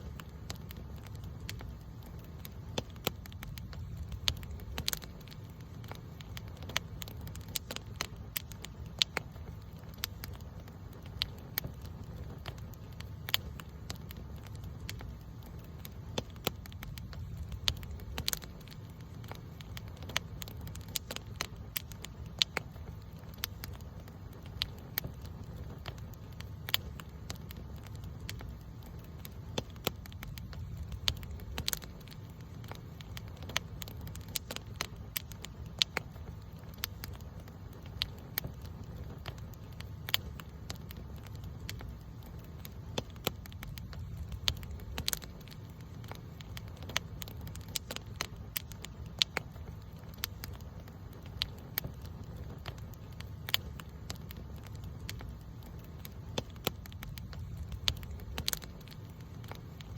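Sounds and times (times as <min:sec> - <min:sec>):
campfire crackling and popping: 0:00.0 - 0:59.9
steady low rumble: 0:00.0 - 0:59.9.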